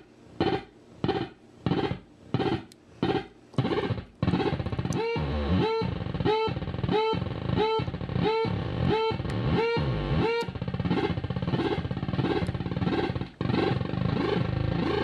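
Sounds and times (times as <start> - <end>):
electronic alarm-like synth tone: 0.4 - 15.0.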